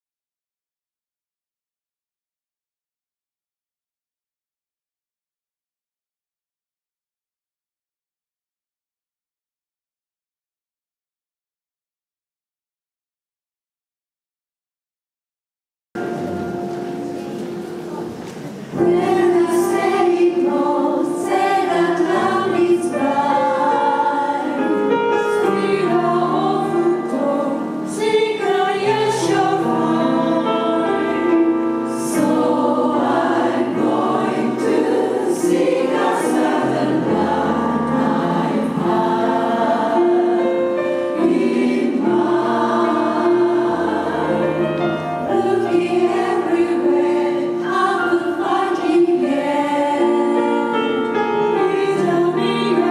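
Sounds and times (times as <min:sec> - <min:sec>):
jazz chorus singing: 0:16.0 - 0:52.9.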